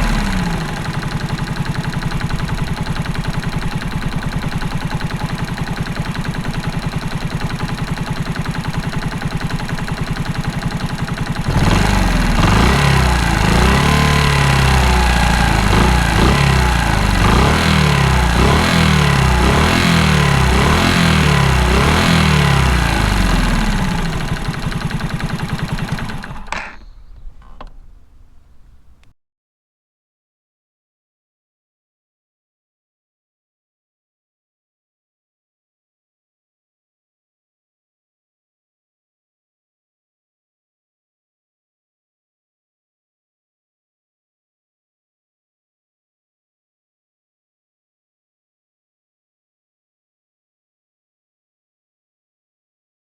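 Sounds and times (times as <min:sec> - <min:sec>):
metallic engine knock: 0:00.0 - 0:13.4
engine running down: 0:00.0 - 0:29.0
motorcycle engine idling and revving: 0:00.0 - 0:29.1.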